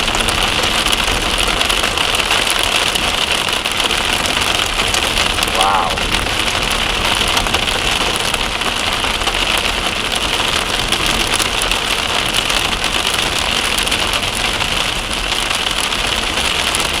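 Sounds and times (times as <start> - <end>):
heavy rain falling: 0.0 - 17.0.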